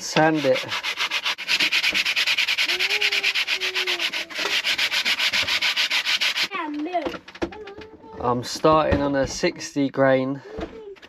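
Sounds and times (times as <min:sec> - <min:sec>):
sandpaper rasping on wood: 0:00.0 - 0:06.5.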